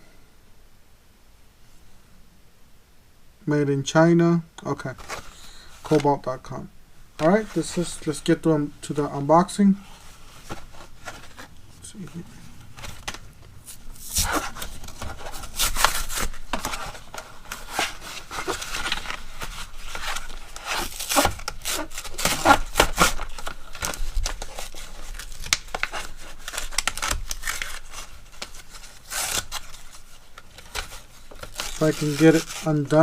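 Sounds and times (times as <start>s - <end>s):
packaging tearing and crinkling: 12.6s - 33.0s.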